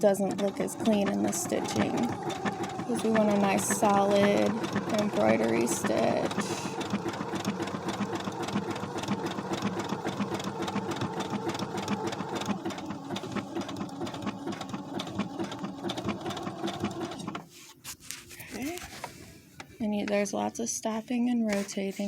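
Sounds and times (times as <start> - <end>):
sewing machine running: 0.0 - 17.4.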